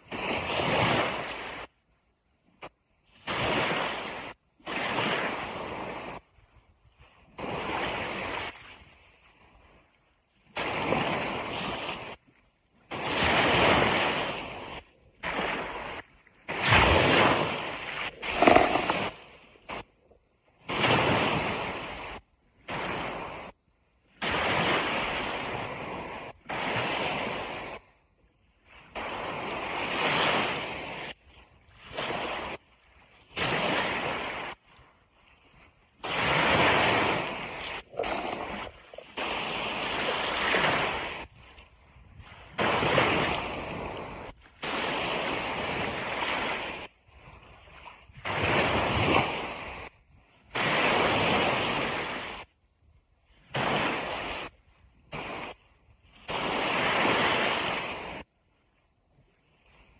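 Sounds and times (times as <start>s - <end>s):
ocean surf washing onto beach: 12.9s - 19.1s, 36.5s - 41.2s.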